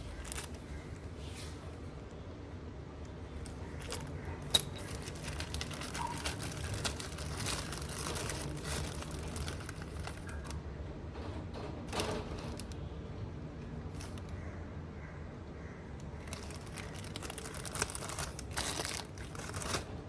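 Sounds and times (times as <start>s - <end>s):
crinkling and rustling: 0.0s - 1.9s, 3.1s - 14.4s, 16.0s - 20.0s.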